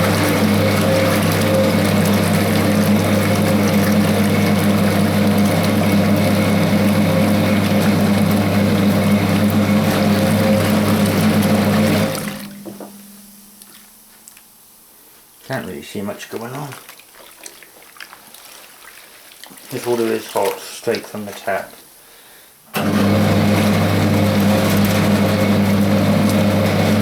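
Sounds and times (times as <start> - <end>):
washing machine motor humming: 0.0 - 13.8, 22.7 - 27.0.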